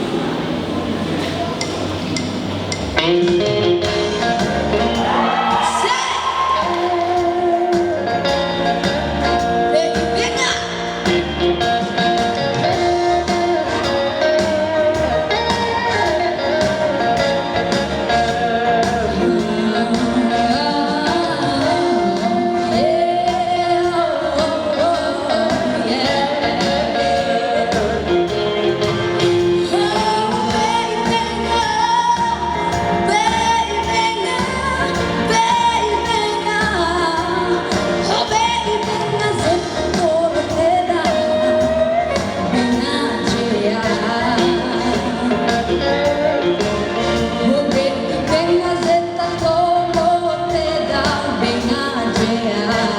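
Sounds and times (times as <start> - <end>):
instrumental accompaniment with beat: 1.6 - 52.9.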